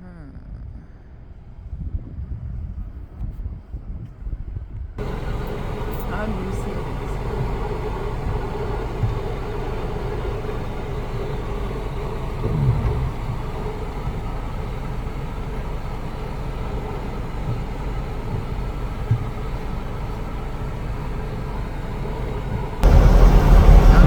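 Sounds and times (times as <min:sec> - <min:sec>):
vehicle engine rumbling: 0:05.0 - 0:24.0.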